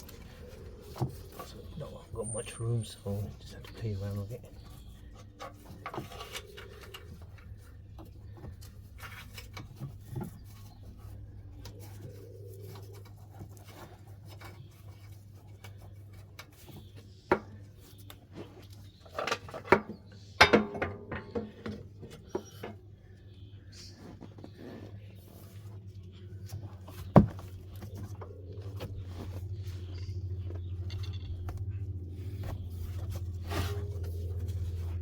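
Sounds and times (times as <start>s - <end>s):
metal clanks: 19.1s - 22.8s
steady low hum: 20.4s - 35.0s.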